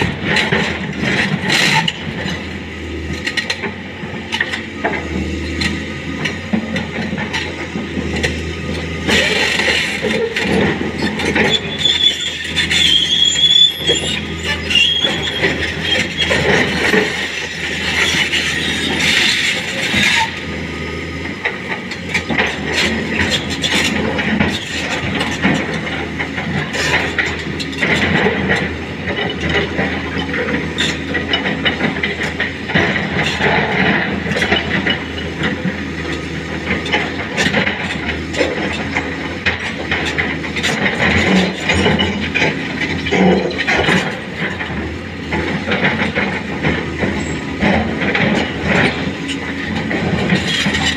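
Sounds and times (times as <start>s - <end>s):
diesel engine running: 0.0s - 50.9s
metallic clanks and rattles: 21.4s - 50.9s.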